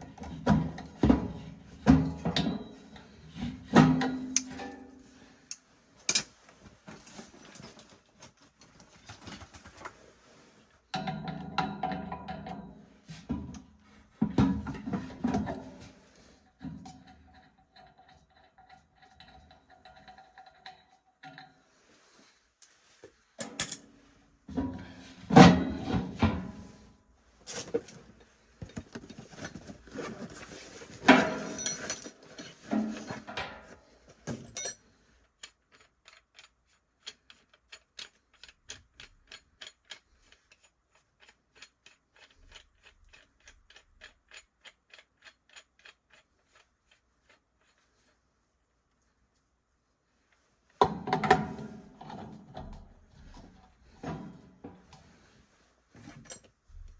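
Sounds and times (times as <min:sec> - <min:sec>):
metal tools clattering: 0:29.2 - 0:34.9.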